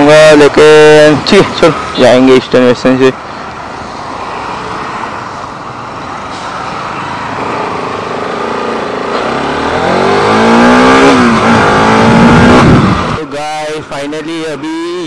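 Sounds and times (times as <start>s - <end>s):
traffic noise: 0.0s - 15.0s
wind: 0.0s - 15.0s
motorcycle engine accelerating: 8.4s - 13.2s.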